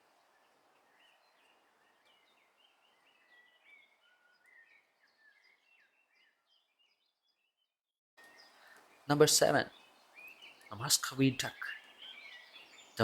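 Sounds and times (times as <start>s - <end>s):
small birds chirping: 0.0s - 13.0s
soft background hiss: 8.2s - 13.0s.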